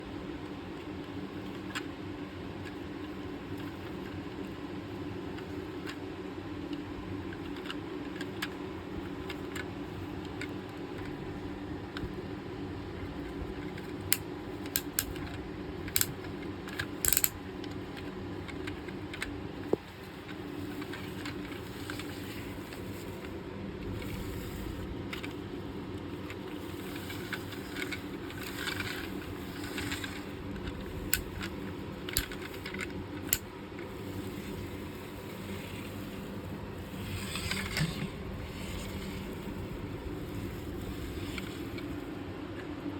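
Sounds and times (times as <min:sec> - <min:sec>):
sharp plastic clicks: 0:13.7 - 0:19.9.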